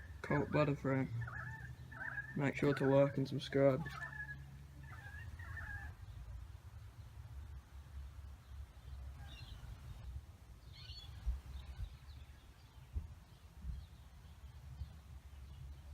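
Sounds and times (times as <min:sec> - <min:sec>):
wind rumbling on microphone: 0:04.8 - 0:15.9
faint bird chirps: 0:08.5 - 0:15.9.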